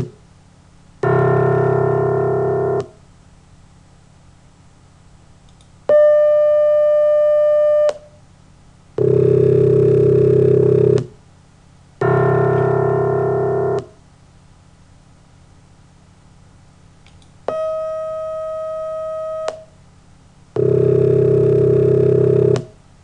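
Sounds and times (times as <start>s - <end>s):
synthesized pure tone: 1.0s - 3.0s, 5.9s - 8.2s, 9.0s - 11.1s, 12.0s - 14.0s, 17.5s - 19.8s, 20.6s - 22.7s
low buzzy synthesized tone: 1.0s - 3.1s, 9.0s - 11.1s, 12.0s - 14.0s, 17.5s - 19.8s, 20.5s - 22.8s.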